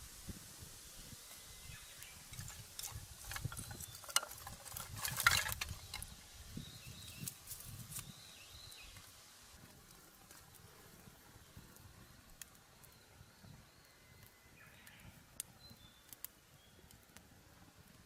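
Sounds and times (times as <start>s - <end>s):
rustling and light clicks: 2.3s - 6.2s, 7.0s - 8.1s.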